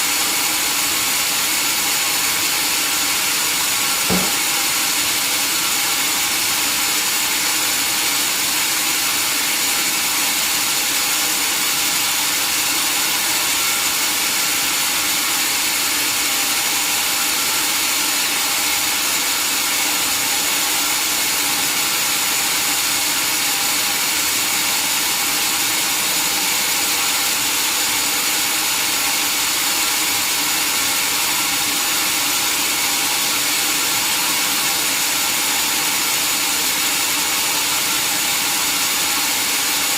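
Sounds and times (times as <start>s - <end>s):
saw cutting through log: 0.0s - 39.9s.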